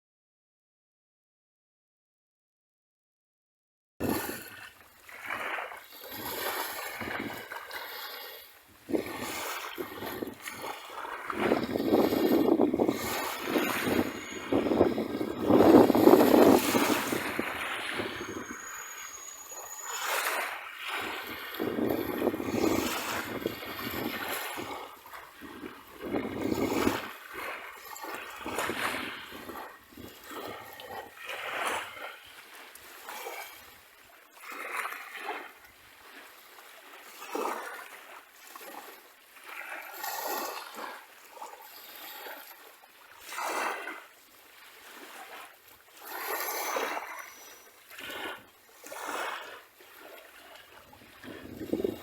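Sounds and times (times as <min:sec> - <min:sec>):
sea waves washing up beach: 0:04.0 - 0:52.0.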